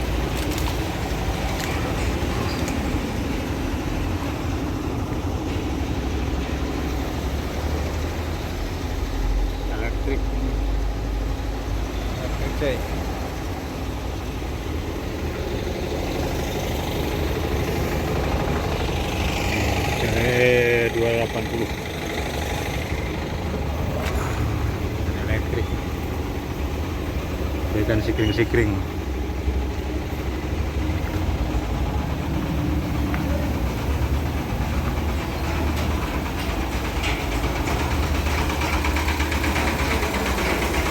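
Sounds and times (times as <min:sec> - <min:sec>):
truck engine idling: 0:00.0 - 0:40.9.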